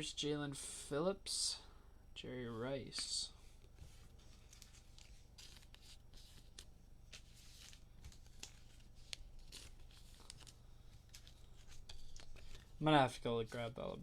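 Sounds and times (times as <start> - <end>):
low electrical hum: 0.0 - 14.0
cards and wrappers rustling: 2.9 - 14.0.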